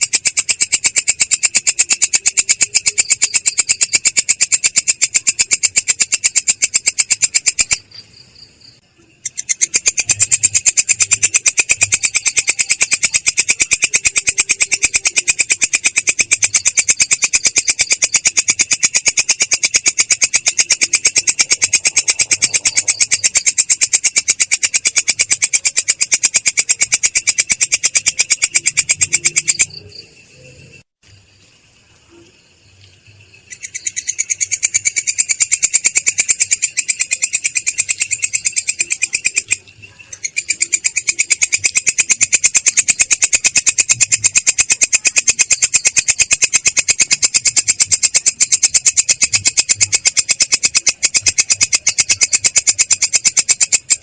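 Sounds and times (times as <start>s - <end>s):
harsh animal trill: 9.6s - 30.6s.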